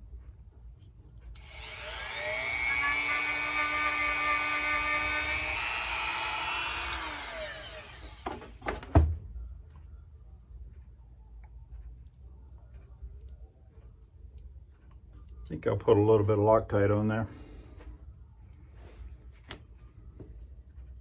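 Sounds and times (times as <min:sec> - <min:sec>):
rotary tool wire brush spinning: 0:01.4 - 0:08.6.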